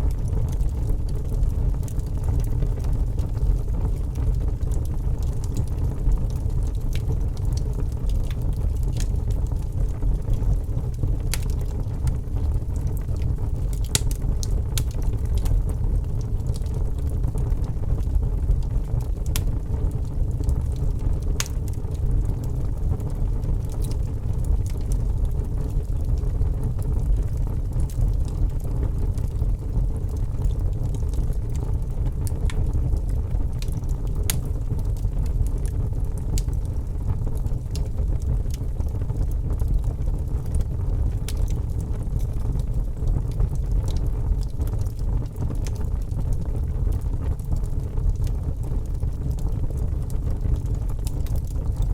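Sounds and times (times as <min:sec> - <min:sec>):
wood fire crackling: 0:00.0 - 0:51.9.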